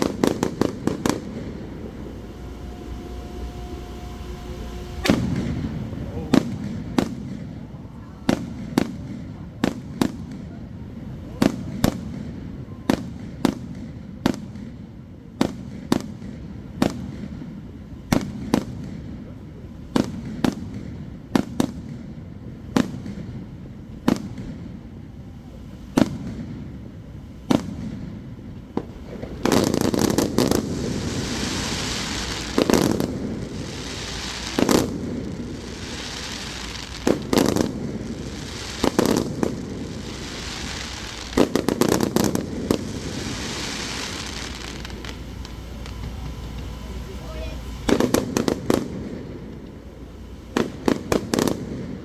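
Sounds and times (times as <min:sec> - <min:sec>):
firework shell bursts: 0:00.0 - 0:07.7, 0:28.8 - 0:46.9
firework crackling: 0:00.0 - 0:52.0.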